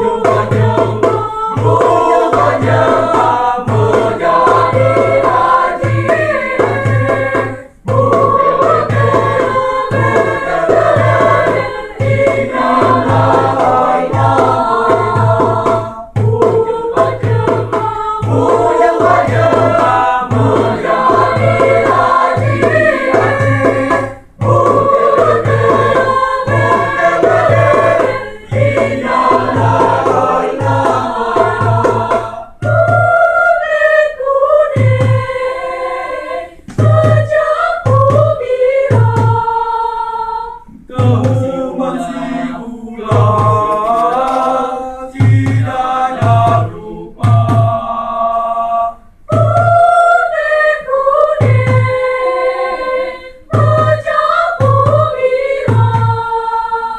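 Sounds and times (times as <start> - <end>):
low thumping beat: 0.0 - 33.8, 34.4 - 39.7, 40.6 - 48.2, 49.3 - 50.3, 53.6 - 56.3
choir singing in harmony: 0.0 - 56.9.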